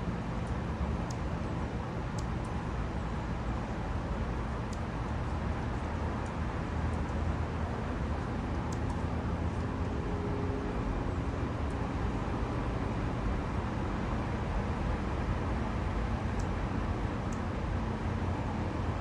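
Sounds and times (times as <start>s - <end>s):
low rumble and hiss: 0.0s - 19.0s
faint high ticks: 0.4s - 2.6s, 4.2s - 5.4s, 6.2s - 9.3s.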